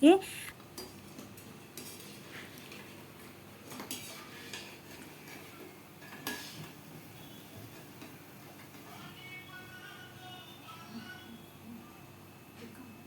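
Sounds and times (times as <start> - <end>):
faint frying hiss: 0.0 - 13.0.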